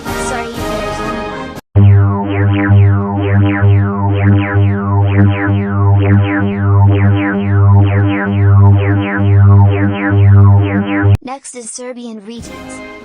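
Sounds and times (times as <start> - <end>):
synthesized alarm tone: 1.8 - 11.2.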